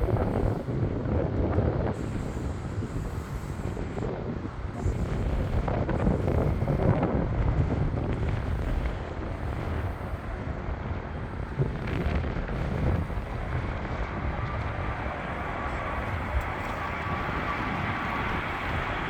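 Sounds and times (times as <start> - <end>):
jet engines rumbling: 0.0 - 19.0
wind buffeting microphone: 0.0 - 19.0.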